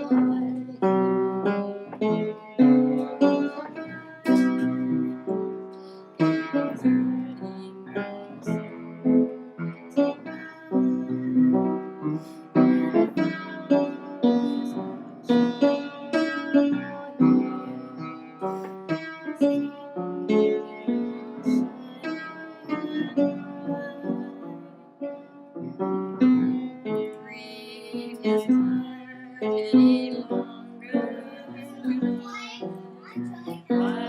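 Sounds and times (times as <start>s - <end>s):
piano melody with chords: 0.0s - 34.0s.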